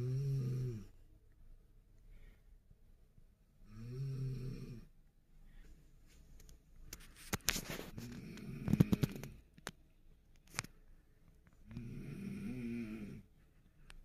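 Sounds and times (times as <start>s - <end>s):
person snoring with rattling clicks: 7.9s - 9.7s, 11.7s - 13.2s.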